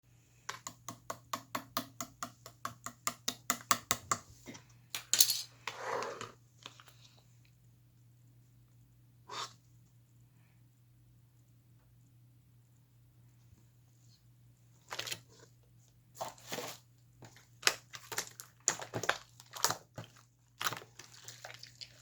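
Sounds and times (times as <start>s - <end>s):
slime squelching: 16.2s - 22.0s.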